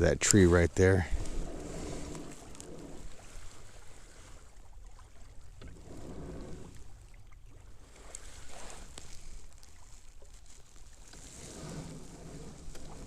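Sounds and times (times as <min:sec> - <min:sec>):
wind on microphone: 0:00.0 - 0:09.8
faint water sound: 0:00.0 - 0:13.0.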